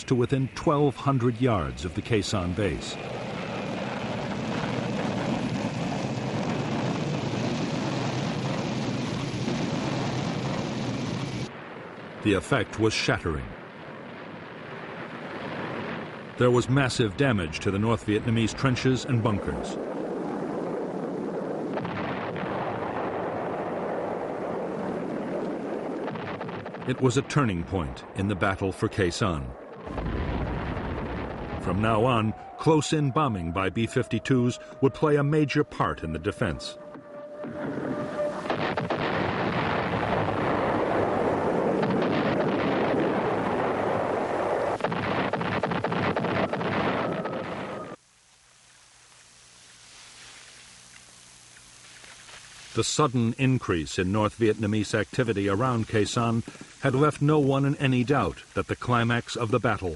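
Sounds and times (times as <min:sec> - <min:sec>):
rumbling roar of bombing barrage: 0:00.0 - 0:48.0
sharp blasts: 0:37.4 - 0:48.0.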